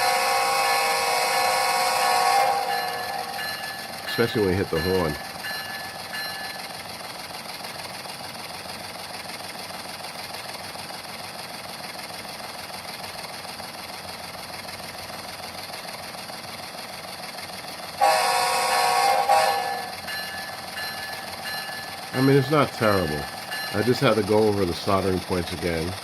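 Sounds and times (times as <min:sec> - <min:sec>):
loud horn blast: 0:00.0 - 0:02.9, 0:18.0 - 0:19.9
model locomotive engine sound: 0:00.0 - 0:26.0.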